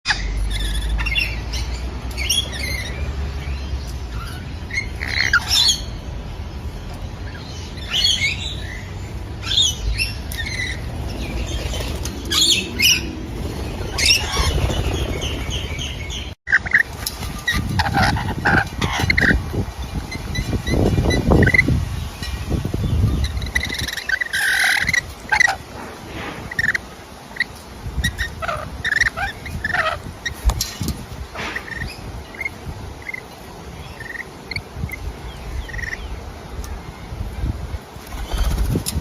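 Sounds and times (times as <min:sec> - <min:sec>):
parrots squawking: 0:04.1 - 0:06.0, 0:13.8 - 0:15.6, 0:17.5 - 0:19.5, 0:23.2 - 0:25.7, 0:26.5 - 0:30.4, 0:31.4 - 0:33.3.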